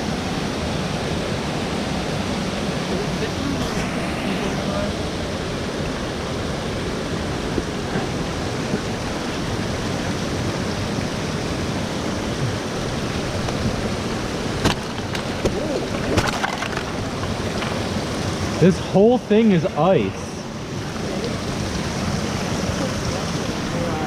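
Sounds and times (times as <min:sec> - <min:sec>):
waterfall roaring: 0:00.0 - 0:24.0.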